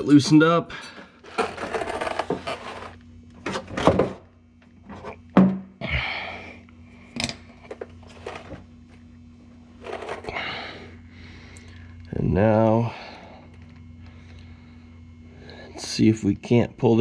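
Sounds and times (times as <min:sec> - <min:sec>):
steady low hum: 0:00.0 - 0:17.0
metal scrape: 0:01.3 - 0:03.0, 0:09.8 - 0:10.3.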